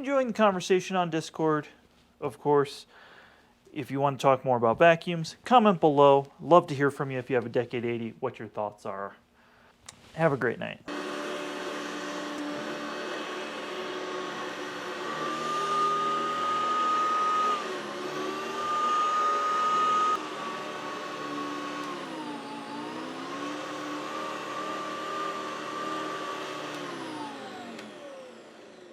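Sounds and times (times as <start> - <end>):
vacuum cleaner motor whine: 10.9 - 28.9.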